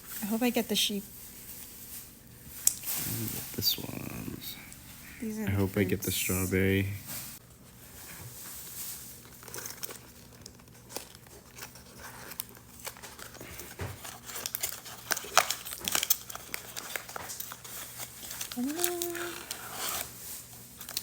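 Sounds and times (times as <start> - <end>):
wrapper crinkling and tearing: 8.5 - 21.0.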